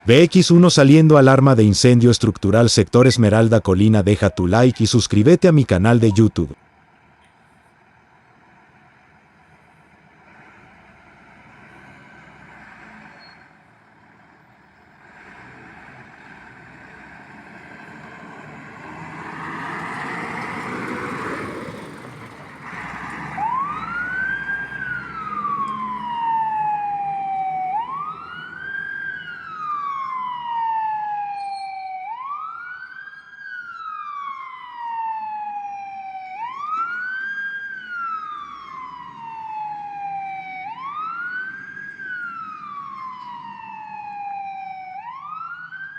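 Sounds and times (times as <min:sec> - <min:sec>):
fire engine siren wailing: 0:00.0 - 0:06.9, 0:10.0 - 0:45.9
truck engine running: 0:05.9 - 0:30.3.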